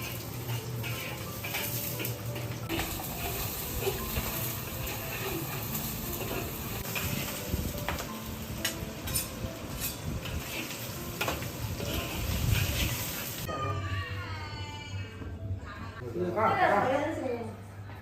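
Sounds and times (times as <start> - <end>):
sizzling hiss: 0.0 - 13.5.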